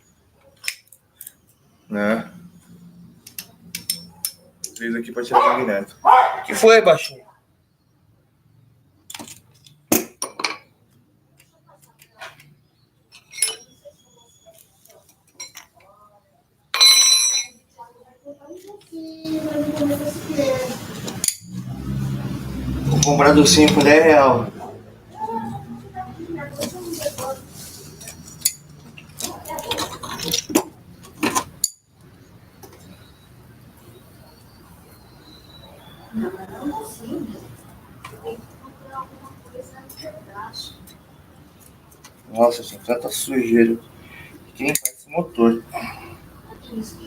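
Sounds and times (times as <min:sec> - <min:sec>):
metal tools clinking: 0:03.2 - 0:04.9, 0:13.1 - 0:15.8, 0:16.8 - 0:17.6, 0:19.5 - 0:21.7, 0:22.9 - 0:24.1, 0:26.6 - 0:31.9.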